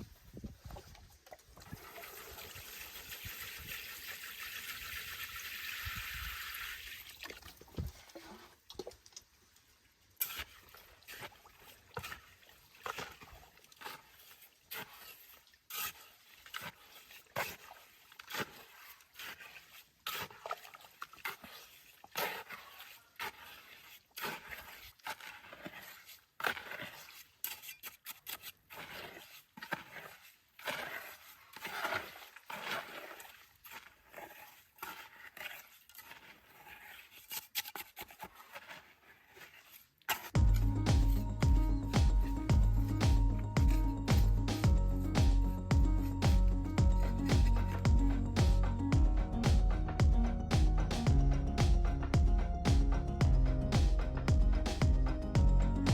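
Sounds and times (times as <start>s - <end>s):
water pouring: 0.7s - 9.3s.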